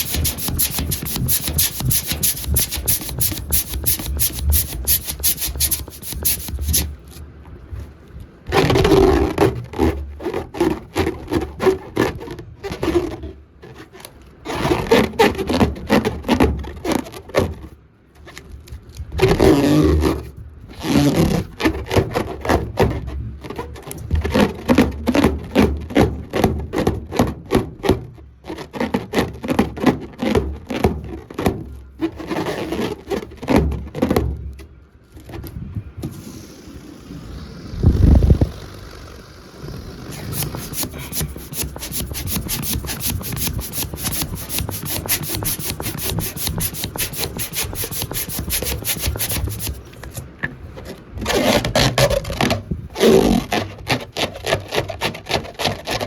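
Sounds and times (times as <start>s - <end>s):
rubber balloon squeaking: 0.0s - 7.0s, 32.0s - 34.0s, 36.2s - 50.3s, 50.9s - 56.0s.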